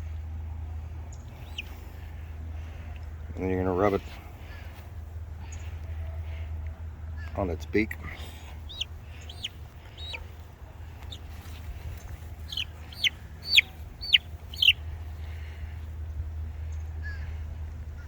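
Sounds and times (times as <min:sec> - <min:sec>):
steady low hum: 0:00.0 - 0:18.0
chicken high-pitched calls: 0:01.4 - 0:01.7, 0:08.6 - 0:10.3, 0:12.3 - 0:14.8.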